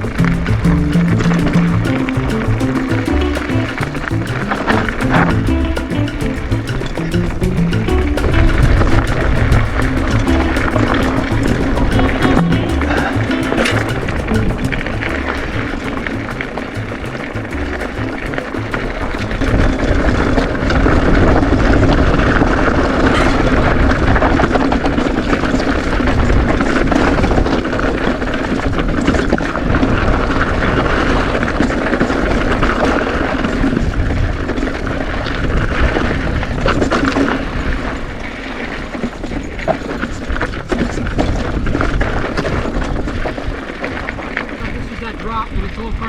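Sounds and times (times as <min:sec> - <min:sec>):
clicks and rattles: 0:00.0 - 0:19.9
wind rumbling on microphone: 0:00.0 - 0:46.0.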